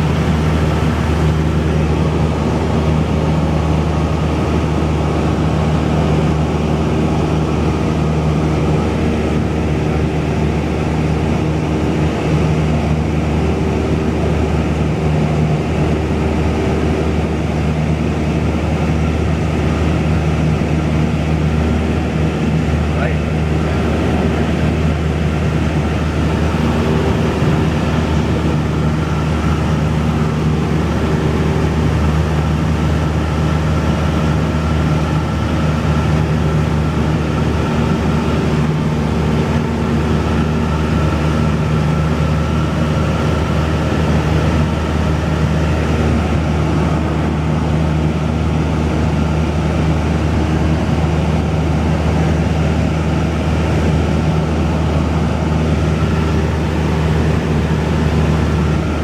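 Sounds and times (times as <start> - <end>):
airplane engine drone: 0.0 - 59.0.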